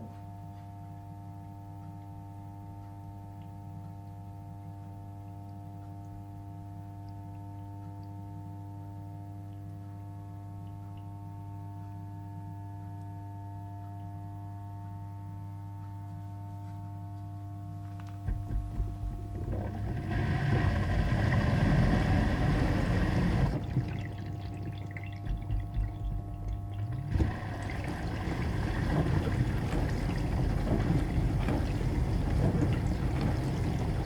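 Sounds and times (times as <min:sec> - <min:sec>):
appliance humming: 0:17.8 - 0:34.0
water churning: 0:18.3 - 0:34.0.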